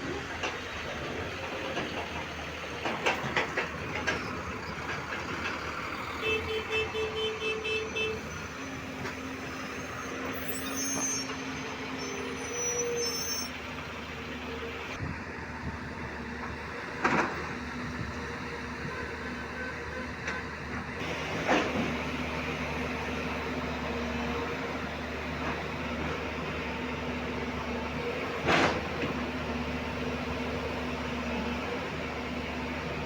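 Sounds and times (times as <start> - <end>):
diesel engine running: 0.0 - 33.0.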